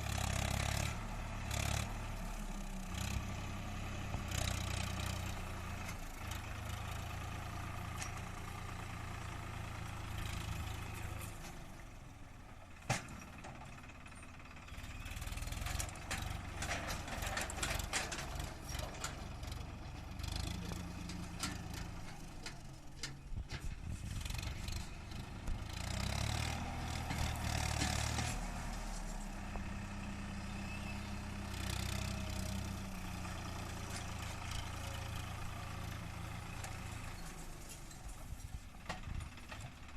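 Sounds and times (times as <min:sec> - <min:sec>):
tractor diesel engine running: 0:00.0 - 0:39.9
metal clanks and rattles: 0:15.6 - 0:20.1, 0:20.8 - 0:24.6.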